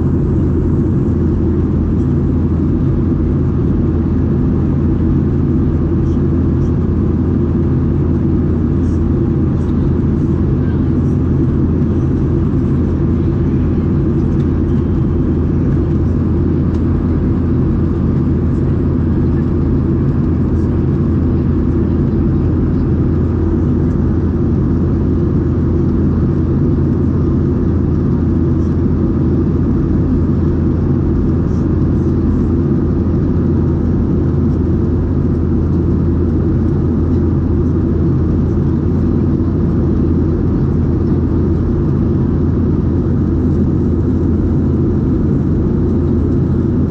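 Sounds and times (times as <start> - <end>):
jet engine drone in cabin: 0.0 - 46.9.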